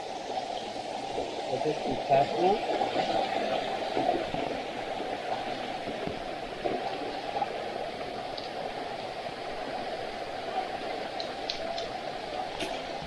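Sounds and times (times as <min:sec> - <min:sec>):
stream water flowing over rocks: 0:00.0 - 0:13.0.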